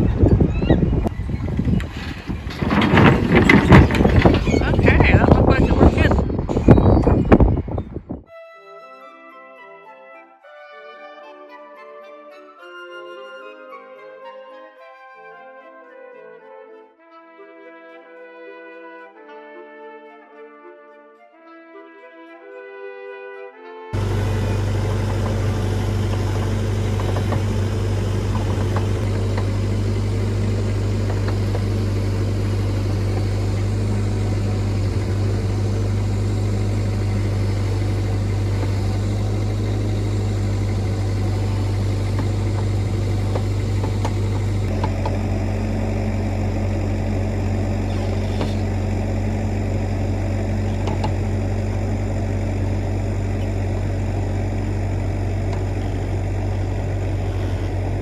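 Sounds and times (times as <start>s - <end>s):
diesel engine running: 0.0s - 8.1s, 24.0s - 58.0s.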